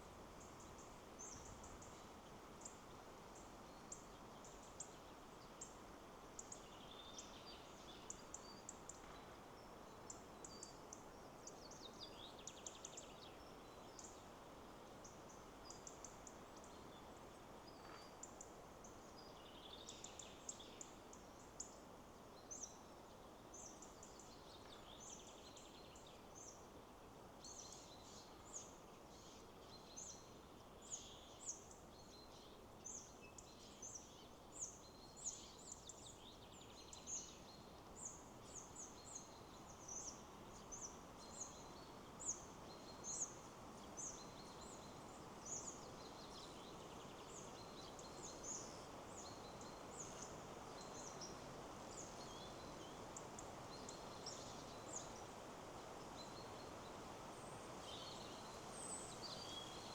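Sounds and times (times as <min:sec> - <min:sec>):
wind in the trees: 0:00.0 - 0:59.9
small birds chirping: 0:27.5 - 0:59.9.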